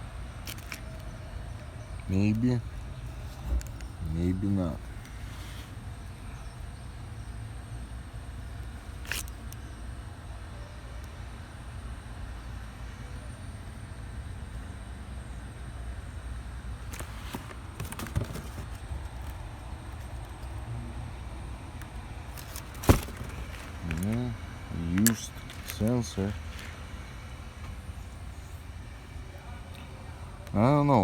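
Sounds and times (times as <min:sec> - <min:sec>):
clicks and knocks handling parts: 0:00.4 - 0:01.7, 0:08.6 - 0:09.5, 0:16.8 - 0:20.6, 0:22.3 - 0:24.3.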